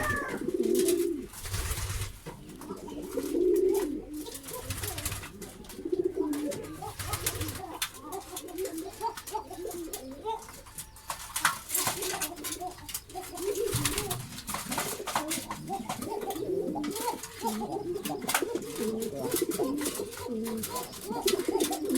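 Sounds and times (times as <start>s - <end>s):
pigeons cooing: 0.0s - 21.9s.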